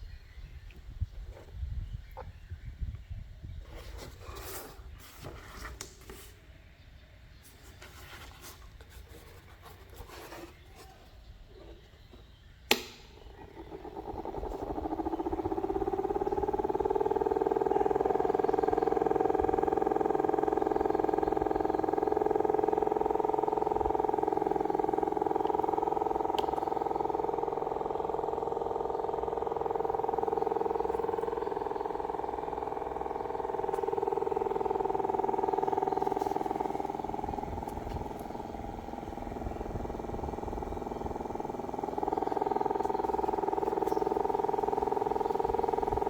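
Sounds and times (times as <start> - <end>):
small fan motor humming: 7.4 - 46.0
switch click: 12.7 - 13.3.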